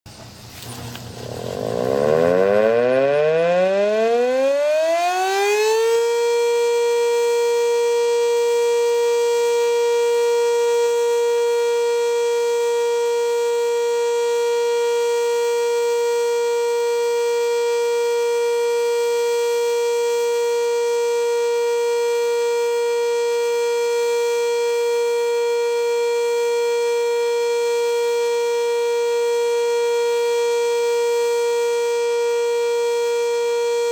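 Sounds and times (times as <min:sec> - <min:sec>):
civil defense siren winding up: 0:00.6 - 0:33.9.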